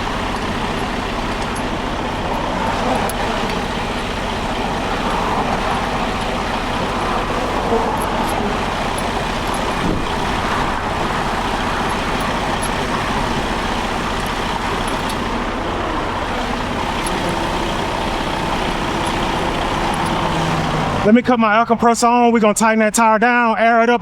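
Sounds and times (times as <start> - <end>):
heavy traffic passing: 0.0 - 22.8
faint ticks: 16.4 - 20.7.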